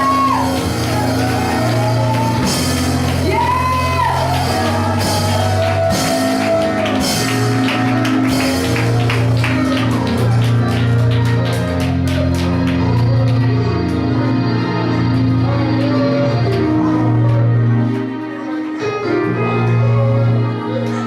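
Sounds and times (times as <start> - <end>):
band music with bass and drums: 0.0 - 13.9
person singing: 11.6 - 21.0.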